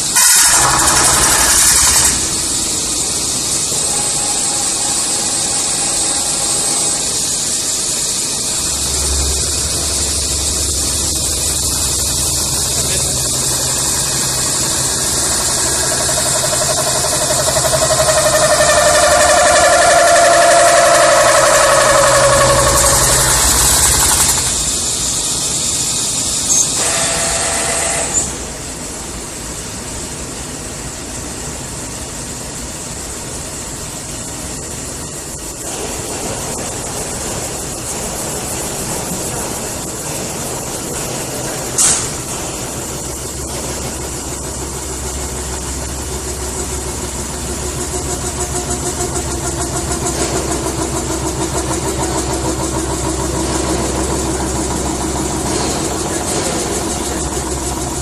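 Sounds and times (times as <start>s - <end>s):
high hiss: 0.0s - 18.7s
metal spinning machine running: 0.0s - 58.0s
low droning tone: 8.4s - 20.2s.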